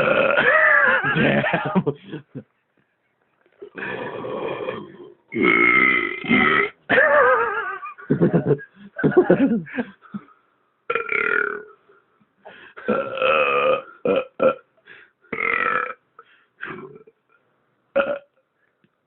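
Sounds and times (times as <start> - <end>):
person belching: 0.0 - 1.6, 3.6 - 7.3, 10.9 - 11.8, 12.8 - 14.7, 15.3 - 16.0, 16.6 - 17.2, 18.0 - 18.3.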